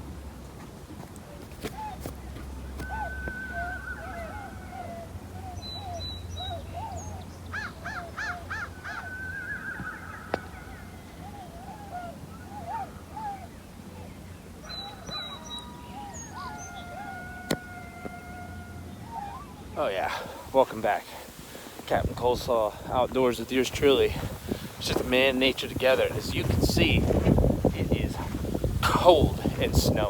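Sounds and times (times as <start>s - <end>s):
coyotes yipping: 2.8s - 20.3s
coyotes howling: 2.8s - 20.4s.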